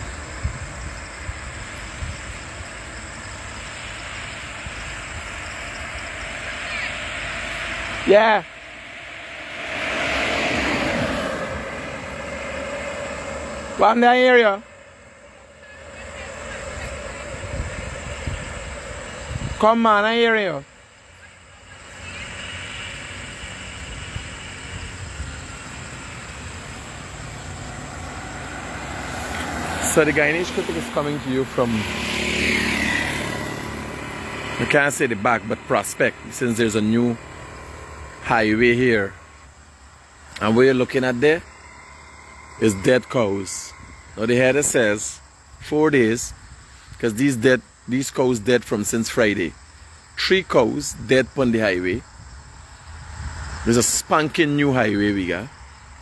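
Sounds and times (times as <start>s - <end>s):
wind thumping on microphone: 0.0s - 8.1s, 16.7s - 19.6s
highway traffic rushing: 0.0s - 56.0s.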